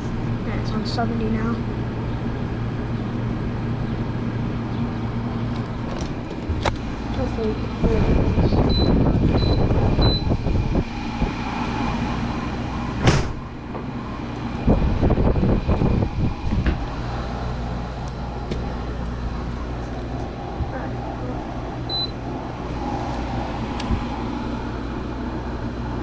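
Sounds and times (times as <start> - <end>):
air conditioner humming: 0.0 - 26.0.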